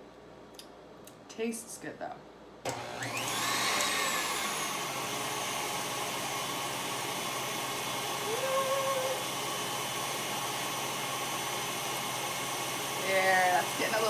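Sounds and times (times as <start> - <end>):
electric mixer whisking: 2.7 - 14.0.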